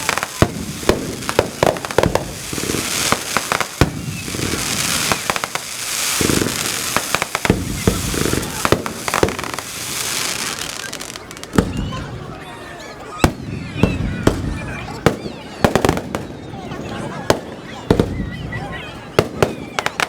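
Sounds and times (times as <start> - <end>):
fireworks crackling: 0.0 - 12.4, 13.2 - 20.0
fireworks bangs: 0.0 - 12.5, 13.1 - 20.0.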